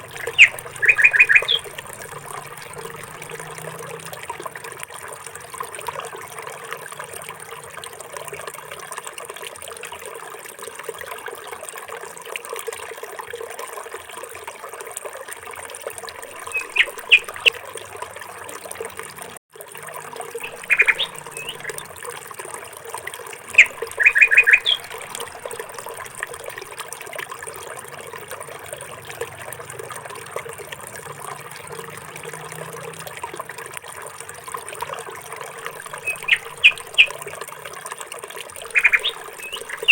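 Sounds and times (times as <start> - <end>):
small bird chirping: 0.0 - 3.1, 16.4 - 17.5, 20.4 - 21.8, 23.5 - 26.0, 35.9 - 37.2, 38.6 - 39.9
trickling water: 0.0 - 39.9.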